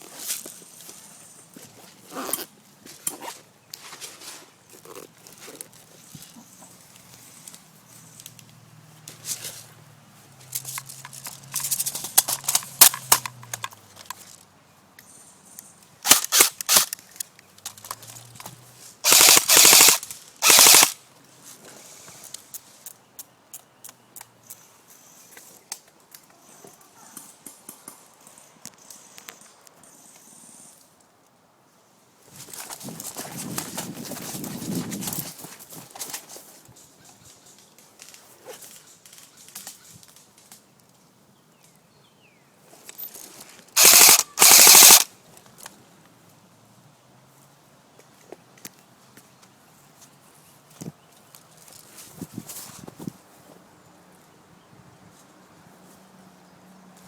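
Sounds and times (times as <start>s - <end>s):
full-auto airsoft bursts: 16.0s - 17.0s, 19.0s - 21.0s, 43.8s - 45.1s
airsoft gun shots: 19.1s - 21.0s, 43.8s - 45.1s.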